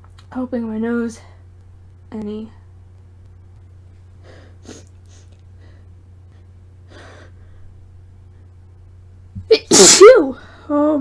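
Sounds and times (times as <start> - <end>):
woman breathing and sniffing: 4.2 - 7.8
woman sneezing loudly: 9.5 - 10.4.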